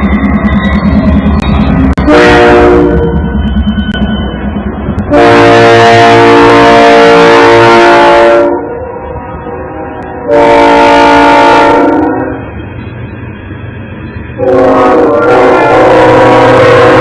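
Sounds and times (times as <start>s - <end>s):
diesel locomotive rumble: 0.0s - 17.0s
locomotive air horn blasts: 2.0s - 3.2s, 5.1s - 12.4s, 14.4s - 17.0s.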